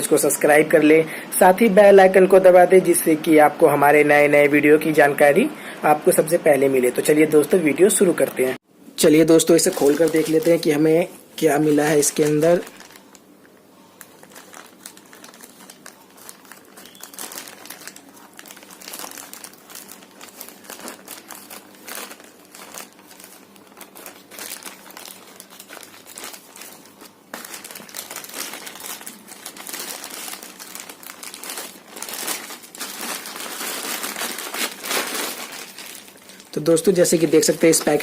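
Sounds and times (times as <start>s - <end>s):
packet crinkling and rustling: 9.2s - 38.0s.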